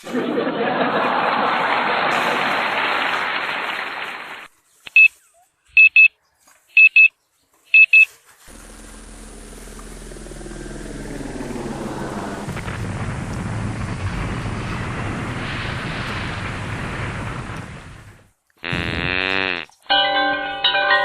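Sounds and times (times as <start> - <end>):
short high electronic beeps: 7.7 - 8.1
loud rushing noise: 8.5 - 18.2
steady rushing noise: 8.5 - 18.3.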